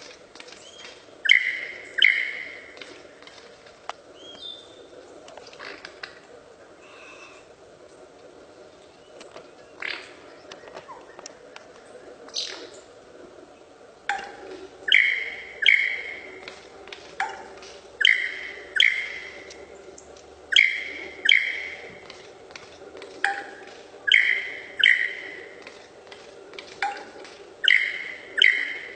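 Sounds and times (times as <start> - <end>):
faint steady hum: 0.0 - 28.9
bird calling sharp ringing notes: 0.6 - 2.7, 14.2 - 16.5, 17.2 - 19.6, 20.5 - 22.1, 23.2 - 25.6, 26.8 - 28.9.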